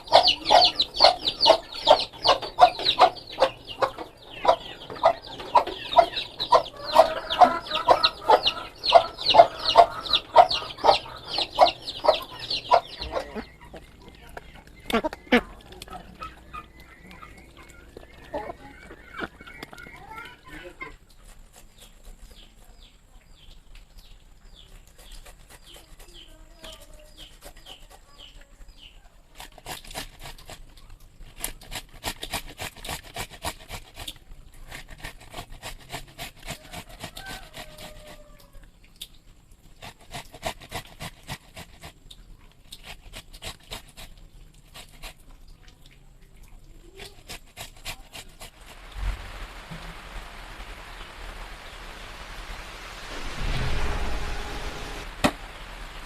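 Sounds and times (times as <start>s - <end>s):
chickens clucking: 0.0s - 31.0s, 32.3s - 42.4s
steady hiss: 48.3s - 56.0s.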